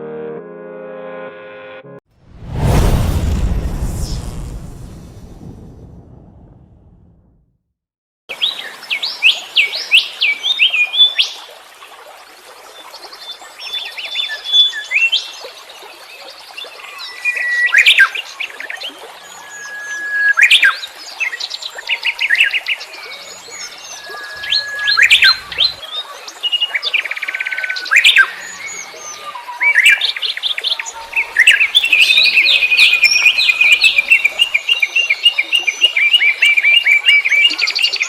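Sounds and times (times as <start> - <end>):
low sound: 2.2 - 7.4.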